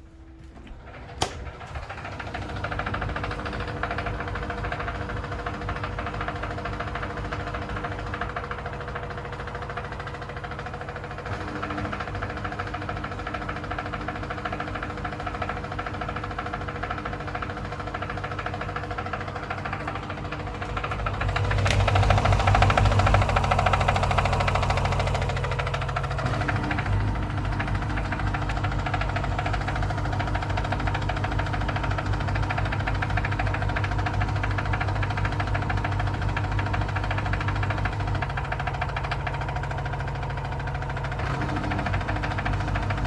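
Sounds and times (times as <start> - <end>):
car engine knocking: 2.1 - 43.0.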